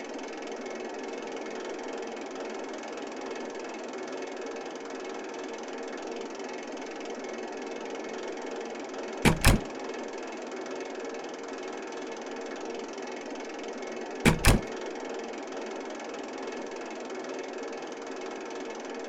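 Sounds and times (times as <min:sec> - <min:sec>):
mechanical running noise with hum: 0:09.2 - 0:09.8, 0:14.3 - 0:14.8
sharp knocks: 0:09.3 - 0:09.7, 0:14.3 - 0:14.7.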